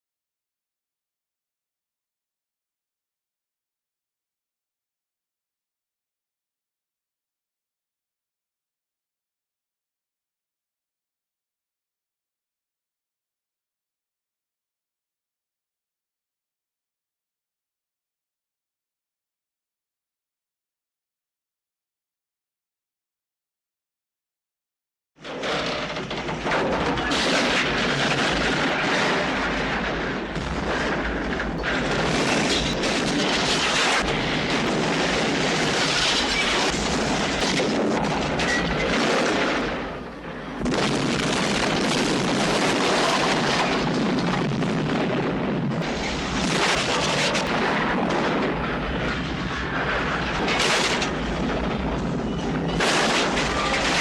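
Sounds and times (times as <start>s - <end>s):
train crash din with booms: 25.2s - 54.0s.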